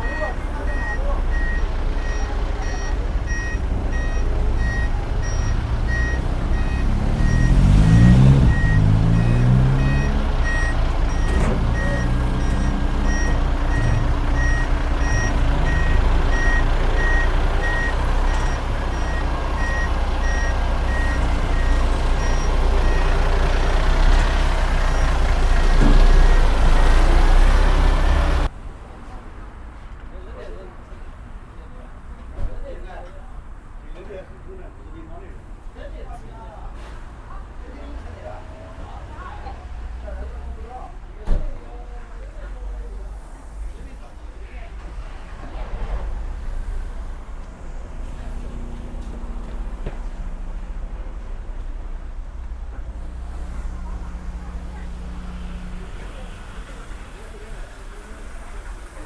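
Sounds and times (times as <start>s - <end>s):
reversing alarm beeping: 0.0s - 23.7s
diesel engine running: 0.0s - 28.5s, 44.8s - 59.0s.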